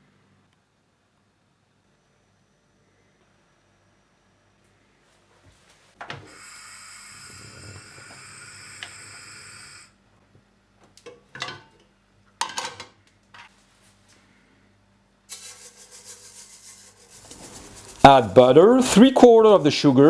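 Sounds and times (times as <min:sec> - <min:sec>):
dishes clattering: 0:11.4 - 0:11.8, 0:12.4 - 0:13.0
steady rushing hiss: 0:15.3 - 0:20.0.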